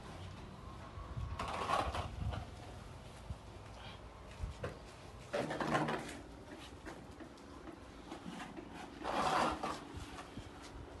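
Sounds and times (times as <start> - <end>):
scraping noises: 1.4 - 2.6, 8.0 - 10.8.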